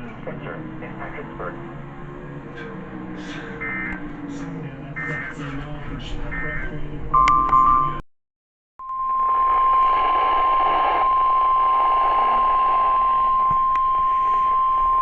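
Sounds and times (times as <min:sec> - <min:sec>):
radio static: 0:00.0 - 0:01.7, 0:03.3 - 0:07.0, 0:09.2 - 0:15.0
steady high alarm tone: 0:03.4 - 0:04.0, 0:05.0 - 0:05.4, 0:06.3 - 0:08.0, 0:08.8 - 0:15.0.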